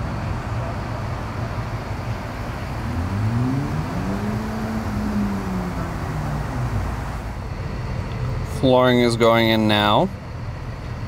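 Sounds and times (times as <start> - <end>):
engine revving: 2.3 - 7.5.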